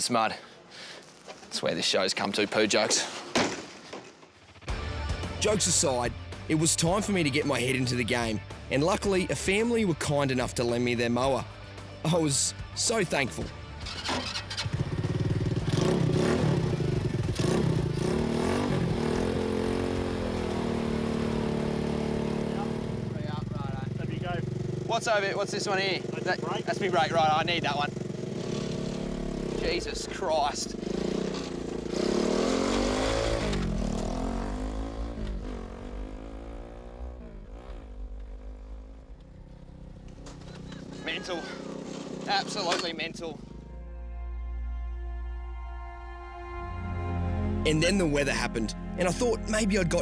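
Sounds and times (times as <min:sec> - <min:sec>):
lawn mower engine revving and idling: 0:05.3 - 0:43.8.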